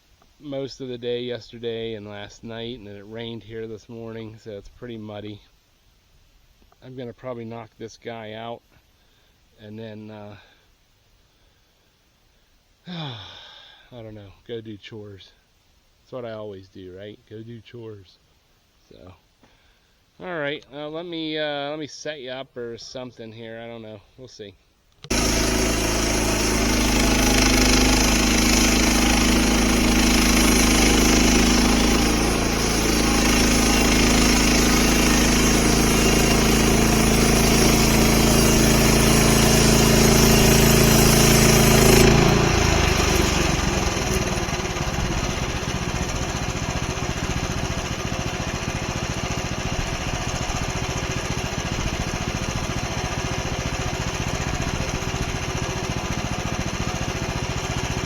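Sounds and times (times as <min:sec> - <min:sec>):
sawmill gas engine running: 0:25.0 - 0:58.0.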